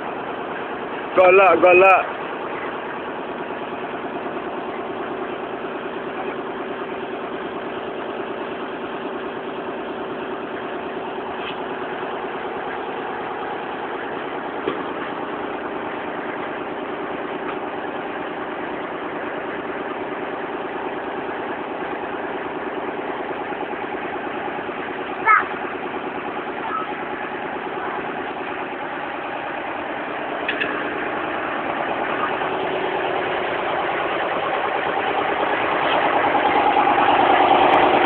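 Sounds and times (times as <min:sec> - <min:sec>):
engine running steadily: 0:00.0 - 0:38.0.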